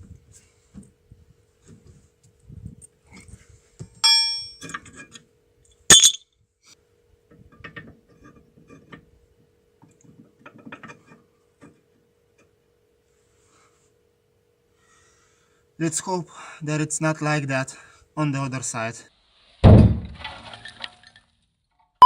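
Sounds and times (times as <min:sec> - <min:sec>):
ringing metal clang: 0:04.0 - 0:04.7, 0:05.9 - 0:06.2
metal tools clanging on metal: 0:04.0 - 0:05.1, 0:05.9 - 0:06.2.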